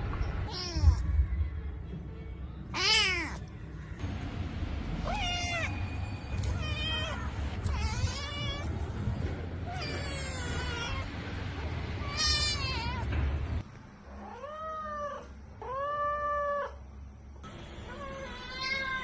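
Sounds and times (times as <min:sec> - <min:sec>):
cat meowing: 0:00.4 - 0:01.0, 0:02.8 - 0:03.5, 0:05.0 - 0:05.8, 0:06.4 - 0:08.8, 0:09.6 - 0:13.1, 0:14.2 - 0:16.8, 0:17.8 - 0:19.0.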